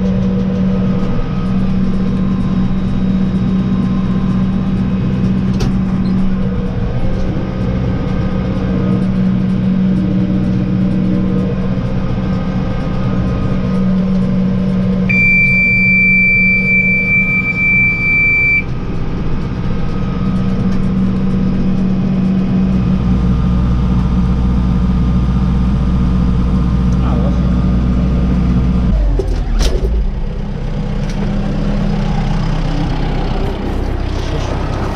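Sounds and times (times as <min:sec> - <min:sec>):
diesel tractor engine running: 0:00.0 - 0:34.9
high electronic buzzer: 0:15.1 - 0:18.7.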